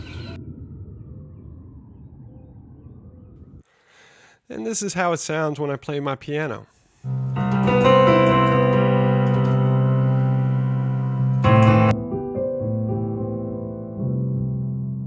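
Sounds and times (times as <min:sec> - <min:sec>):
piano playing slow chords: 0:07.1 - 0:15.0.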